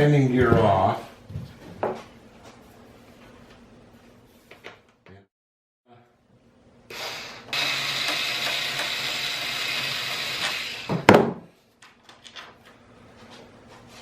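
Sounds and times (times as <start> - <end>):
cordless drill whining: 6.9 - 11.0.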